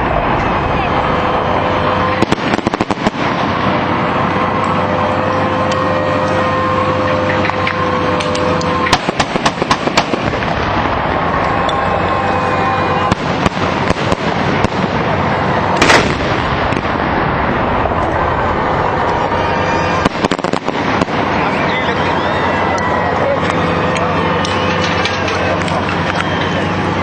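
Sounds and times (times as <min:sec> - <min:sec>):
steady din: 0:00.0 - 0:27.0
loud firework bang: 0:02.0 - 0:04.5, 0:08.8 - 0:11.4, 0:13.0 - 0:18.0, 0:19.2 - 0:21.9
fireworks crackling pops: 0:02.2 - 0:03.7, 0:07.4 - 0:11.0, 0:13.1 - 0:15.1, 0:15.7 - 0:17.0, 0:20.0 - 0:21.6.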